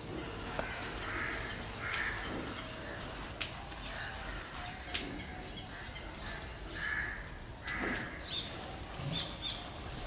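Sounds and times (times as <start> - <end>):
low steady background noise: 0.0 - 10.0
crow cawing: 0.6 - 2.2, 6.8 - 8.2.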